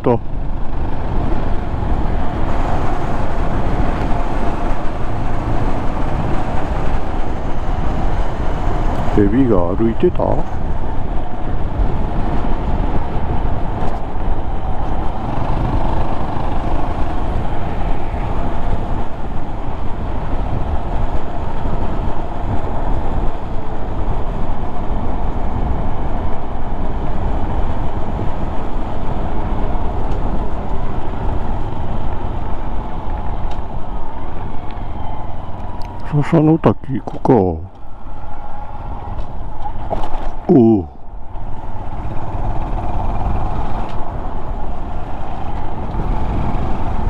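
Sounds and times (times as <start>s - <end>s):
wind rumble on microphone: 0.0s - 47.0s
motorcycle engine running: 10.6s - 24.0s, 41.5s - 47.0s.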